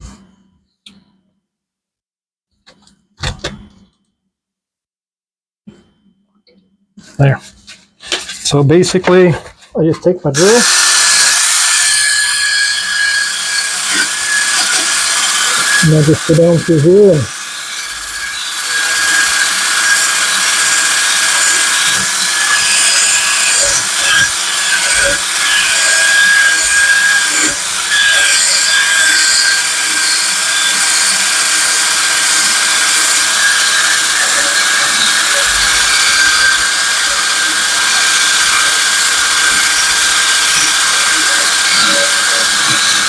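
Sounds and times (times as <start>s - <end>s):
hand drill whine: 10.4s - 43.0s
wire wheel scratching metal blade: 10.4s - 43.0s.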